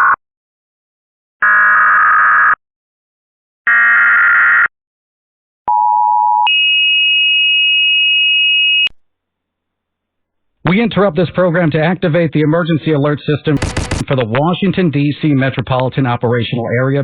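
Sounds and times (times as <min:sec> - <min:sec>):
harsh buzzing data bursts: 0:13.6 - 0:14.1.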